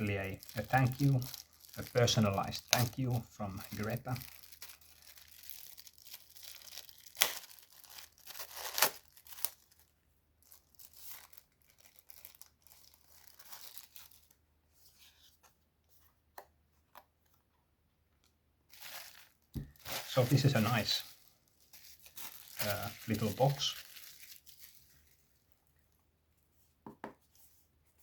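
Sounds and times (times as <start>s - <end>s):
sharp paper crackles: 0.0s - 14.3s, 18.7s - 25.4s
paper packaging rustling: 0.0s - 15.4s, 18.7s - 25.6s.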